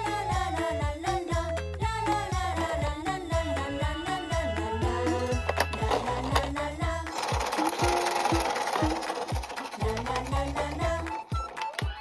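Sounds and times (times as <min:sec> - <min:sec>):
electronic music with thudding beat: 0:02.8 - 0:12.0
toy car rasping whir: 0:04.6 - 0:12.0.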